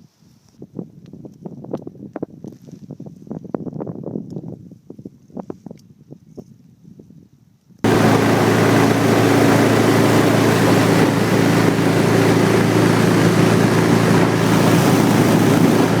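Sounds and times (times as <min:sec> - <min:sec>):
wind noise on microphone: 0:00.0 - 0:16.0
boat motor running: 0:07.9 - 0:16.0.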